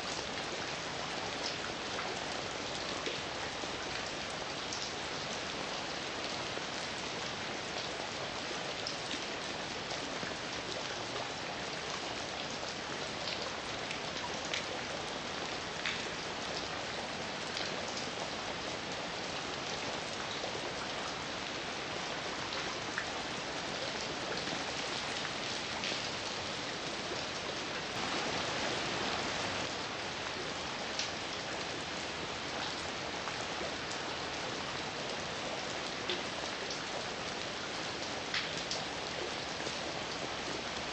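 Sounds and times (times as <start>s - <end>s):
raindrops ticking on surface: 0.1s - 40.9s
heavy rain hiss: 27.8s - 32.5s.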